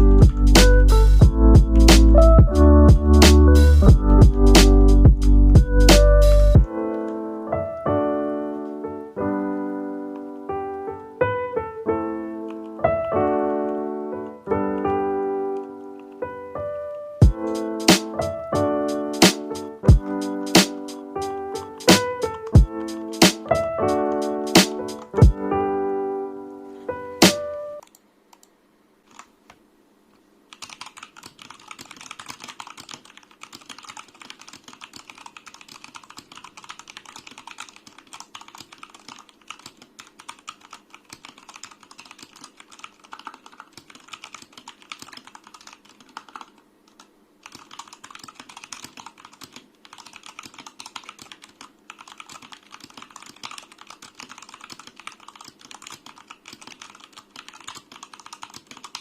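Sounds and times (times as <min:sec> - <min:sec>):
mechanical keyboard typing: 0:17.2 - 0:25.4, 0:29.1 - 0:29.3, 0:30.5 - 0:59.0.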